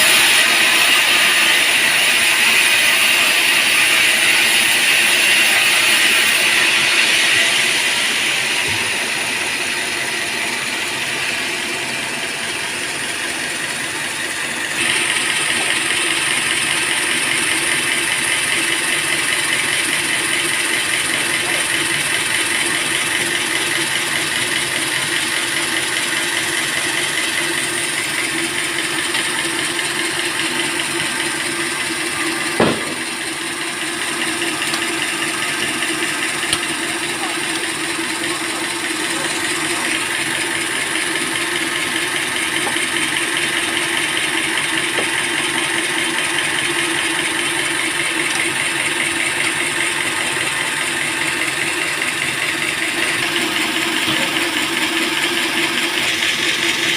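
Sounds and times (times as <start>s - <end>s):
saw blade hissing: 0.0s - 12.4s
sawmill motor humming: 0.0s - 56.9s
sharp knock: 32.6s - 33.1s.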